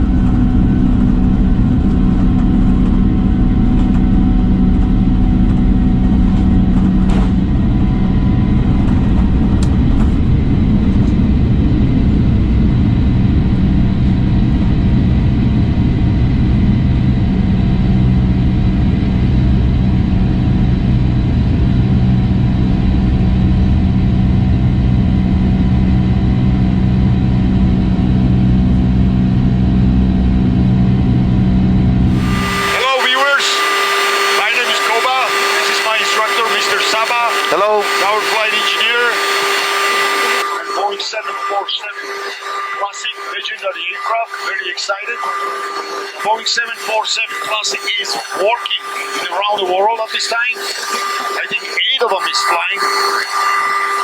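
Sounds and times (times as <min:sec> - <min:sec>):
low hum: 0:00.0 - 0:51.7
airflow and engine noise: 0:00.0 - 0:54.0
fixed tones: 0:32.0 - 0:51.4.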